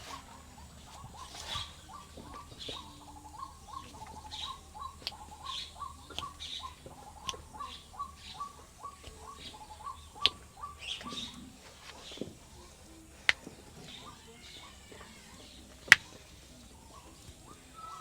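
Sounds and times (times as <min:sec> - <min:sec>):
hands tapping on a head: 0:03.8 - 0:07.8, 0:08.4 - 0:11.3.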